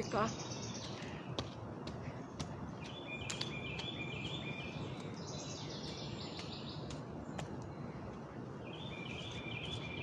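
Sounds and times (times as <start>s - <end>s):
birds chirping: 0.0s - 10.0s
outdoor background noise: 0.0s - 10.0s.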